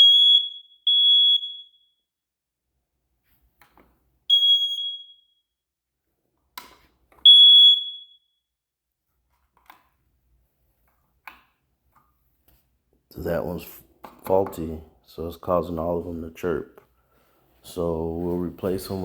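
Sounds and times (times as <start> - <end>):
smoke detector chirping: 4.3 - 5.2, 7.3 - 8.2.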